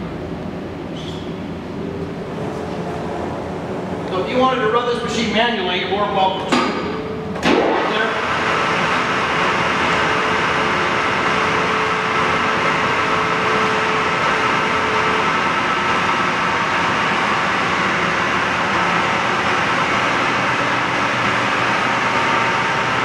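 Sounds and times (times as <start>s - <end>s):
faint hum: 0.0s - 7.4s
lathe running: 7.5s - 23.0s.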